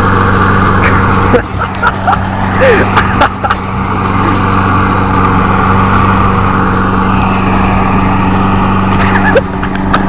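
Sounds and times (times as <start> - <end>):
lawn mower engine running: 0.0 - 10.0.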